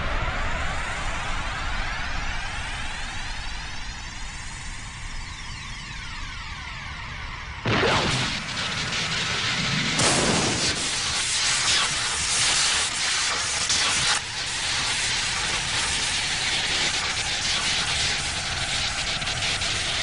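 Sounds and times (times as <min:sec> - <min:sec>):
cartoon hissing rush: 0:07.7 - 0:20.0.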